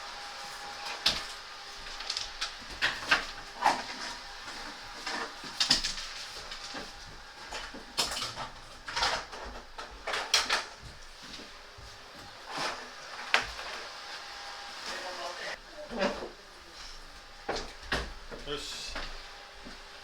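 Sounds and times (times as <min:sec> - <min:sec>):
knocks and clatter of parts: 0:00.8 - 0:11.5.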